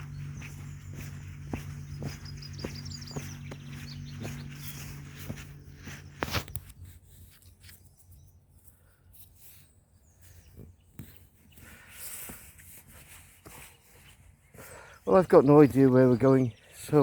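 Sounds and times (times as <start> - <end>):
low steady hum: 0.0 - 6.7
footsteps on woodland floor: 0.0 - 7.8.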